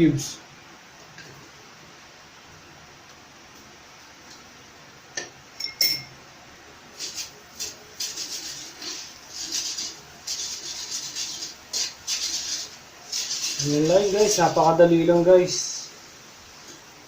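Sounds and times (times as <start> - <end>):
utensil scraping and stirring pan: 7.0 - 15.6.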